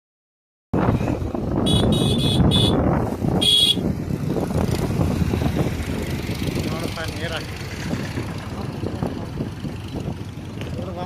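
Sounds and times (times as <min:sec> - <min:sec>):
road traffic: 0:00.8 - 0:11.0
vehicle horns honking: 0:01.6 - 0:02.8, 0:03.4 - 0:03.9.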